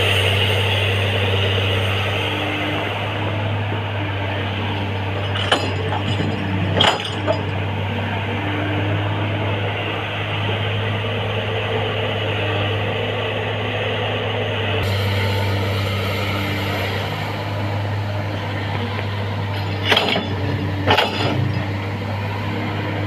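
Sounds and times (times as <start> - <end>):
diesel engine humming: 0.0 - 23.0
sharp knocks and clinks: 4.8 - 7.6.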